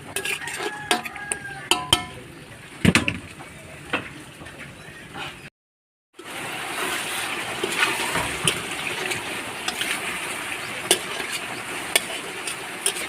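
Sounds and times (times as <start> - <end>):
food sizzling in a pan: 6.2 - 13.0
utensil clicking against pan: 10.9 - 13.0.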